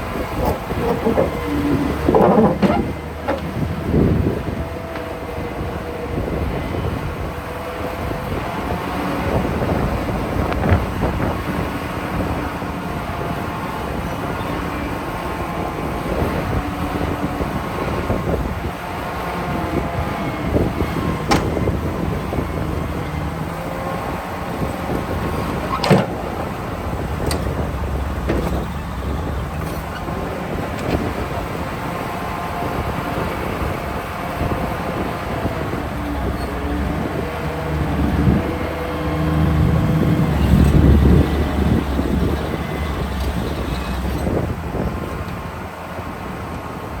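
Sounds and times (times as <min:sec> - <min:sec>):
diesel engine rumble: 0:00.0 - 0:47.0
machinery squeals: 0:00.1 - 0:04.2, 0:27.3 - 0:30.9, 0:40.2 - 0:44.4.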